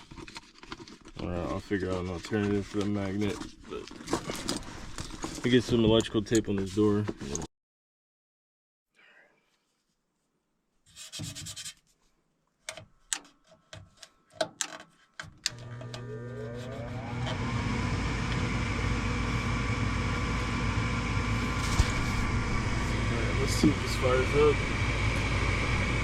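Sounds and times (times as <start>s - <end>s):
furnace fan motor humming: 15.5s - 26.0s.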